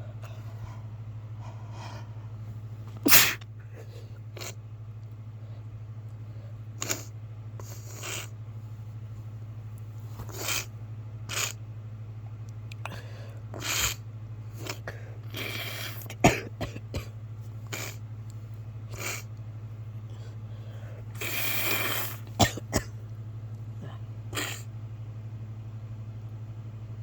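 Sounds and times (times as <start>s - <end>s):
steady low hum: 0.0s - 27.0s
man sniffing: 6.8s - 8.3s, 10.2s - 10.7s, 12.9s - 14.0s, 14.6s - 16.1s, 20.9s - 22.4s
man coughing: 16.2s - 17.2s, 22.4s - 23.0s.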